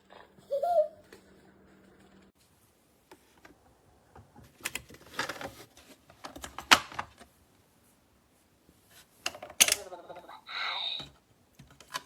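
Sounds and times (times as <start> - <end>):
hard plastic parts clattering: 4.4 - 7.2.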